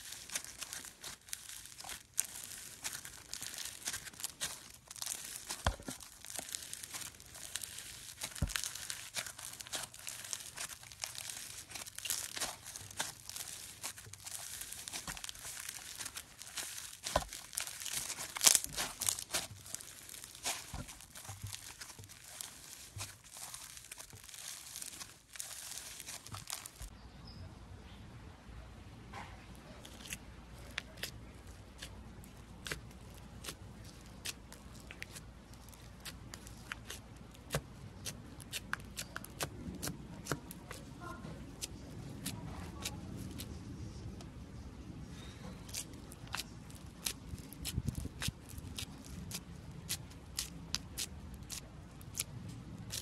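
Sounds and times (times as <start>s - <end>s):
slime crackling and popping: 0.0s - 26.9s, 29.8s - 43.5s, 45.7s - 53.0s.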